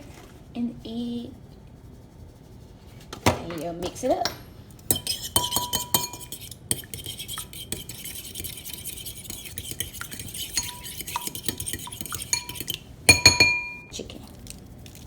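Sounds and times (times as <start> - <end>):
egg beaten in metal bowl: 4.8 - 13.9.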